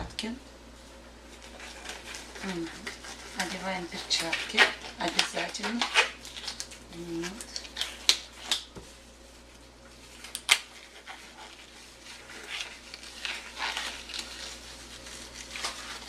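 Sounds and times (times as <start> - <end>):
rustling handling noise: 0.7 - 16.0.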